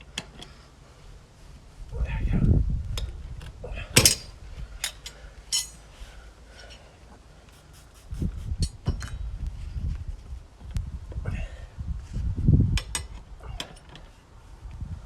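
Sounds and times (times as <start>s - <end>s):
metal tools clinking on wheel rim: 4.0s - 5.8s.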